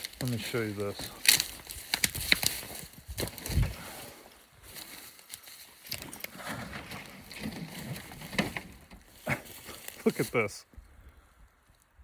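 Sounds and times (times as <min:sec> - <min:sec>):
twig crackles: 0:00.0 - 0:06.4
footsteps crunching through branches: 0:00.0 - 0:10.5.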